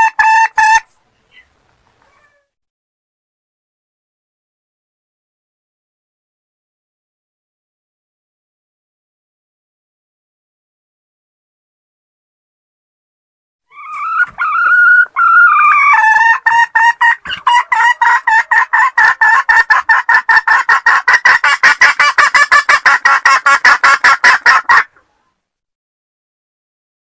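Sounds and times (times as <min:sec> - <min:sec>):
hen clucking rapidly: 0:00.0 - 0:01.5, 0:13.7 - 0:25.1
junglefowl hen calling: 0:00.0 - 0:02.1, 0:13.7 - 0:25.3.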